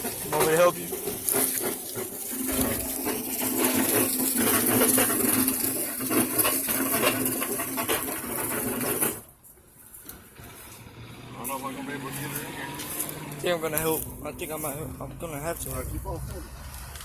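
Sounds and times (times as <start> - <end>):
metallic clanking and rattling: 0.0 - 9.3.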